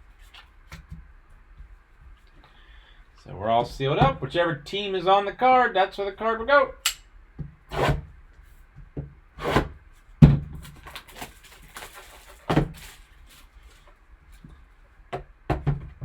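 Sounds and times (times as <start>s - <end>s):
packaging rustling: 10.6s - 14.0s.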